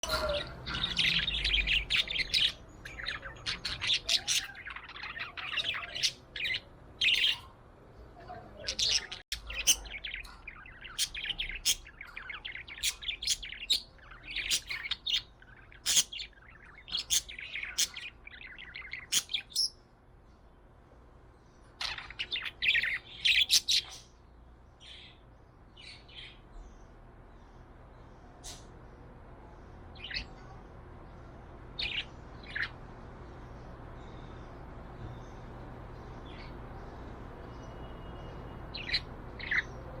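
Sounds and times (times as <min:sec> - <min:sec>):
budgie chirping: 0:08.9 - 0:19.7.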